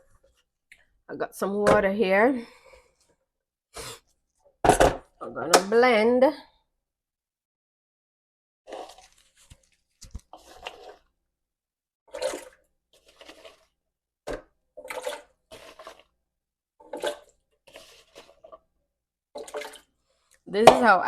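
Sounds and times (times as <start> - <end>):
water splashing and pouring: 8.7 - 11.1, 12.1 - 16.2, 16.8 - 18.7, 19.4 - 20.3.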